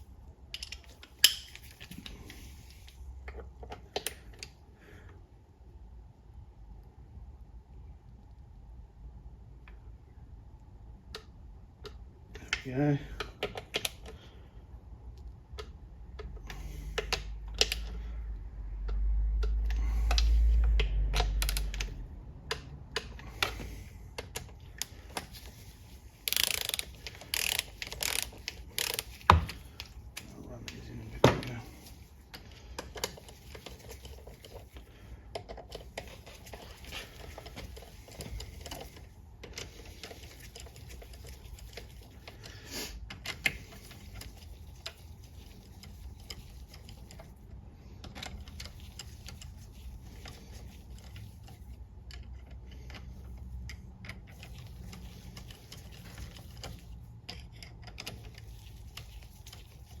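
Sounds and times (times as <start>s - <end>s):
hand ratchet clicking: 26.2s - 29.9s.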